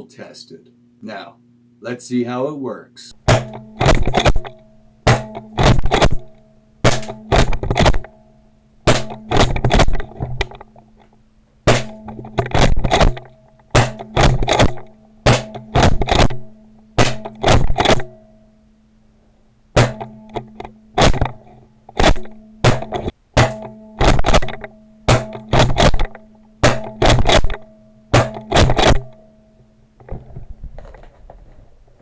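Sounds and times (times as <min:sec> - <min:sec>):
paintball shotgun firing and pumping: 0:03.2 - 0:06.3, 0:06.9 - 0:08.1, 0:08.9 - 0:10.6, 0:11.7 - 0:18.1, 0:19.8 - 0:21.4, 0:22.0 - 0:27.6, 0:28.2 - 0:29.1.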